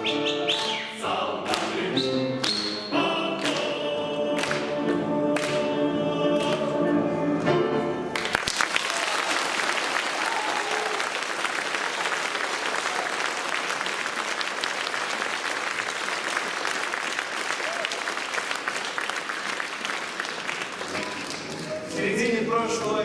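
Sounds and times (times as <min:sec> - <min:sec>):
group singing with piano: 0:00.0 - 0:08.2
audience applause: 0:08.1 - 0:22.0.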